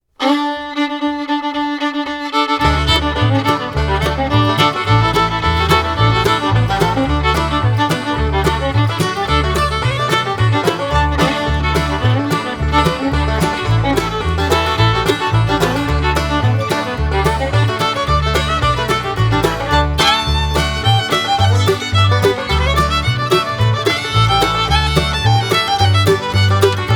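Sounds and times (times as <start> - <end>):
instrumental music with bass and beat: 2.6 - 26.9.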